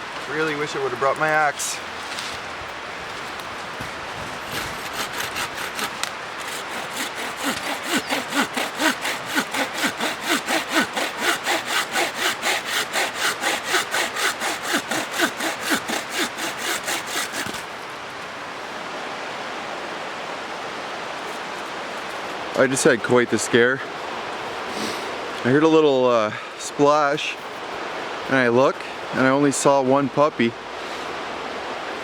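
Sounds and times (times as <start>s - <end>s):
river rushing: 0.0s - 25.6s
hand saw cutting a branch: 3.8s - 17.8s.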